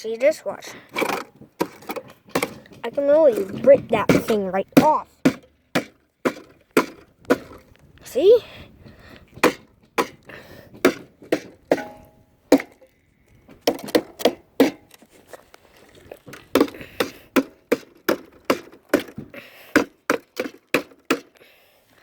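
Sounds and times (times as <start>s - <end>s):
hammer striking rusted metal: 4.1s - 7.6s, 9.4s - 10.2s, 10.8s - 12.9s, 13.6s - 14.9s.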